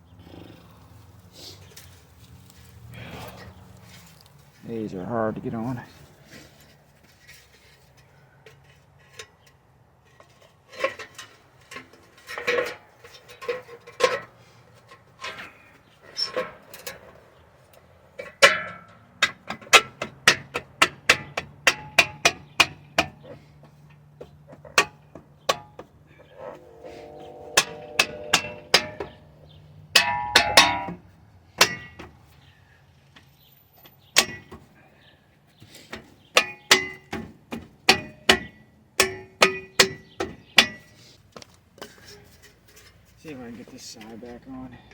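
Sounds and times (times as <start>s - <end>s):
metal parts clicking and clanking: 8.4s - 17.2s.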